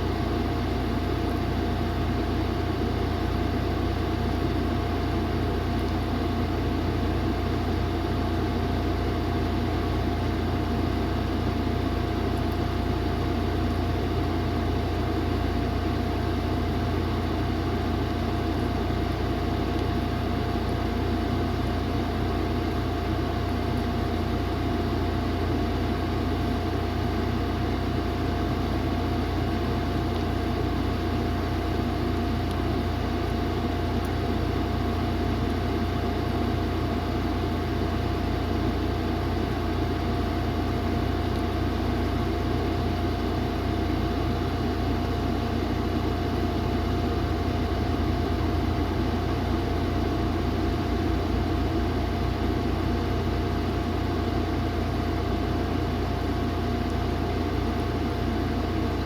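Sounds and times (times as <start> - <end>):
mechanical hum with low drone: 0.0 - 59.0.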